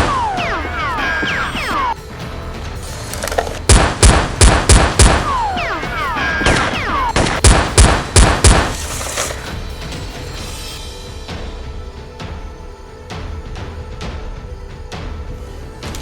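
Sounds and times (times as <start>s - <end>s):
falling whistling tones: 0.0s - 2.0s, 5.2s - 7.4s
rapid gunfire volleys: 0.0s - 2.0s, 3.6s - 9.6s.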